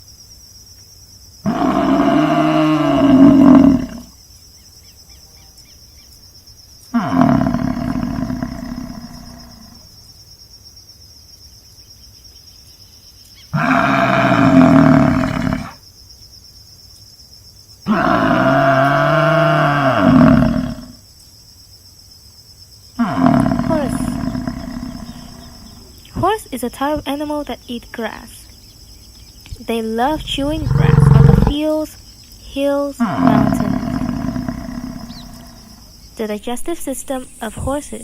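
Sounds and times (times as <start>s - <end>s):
insects chirring: 0.0s - 38.0s
drawn-out wavering animal calls: 1.5s - 4.1s, 13.5s - 15.8s, 23.0s - 26.8s, 28.3s - 36.2s.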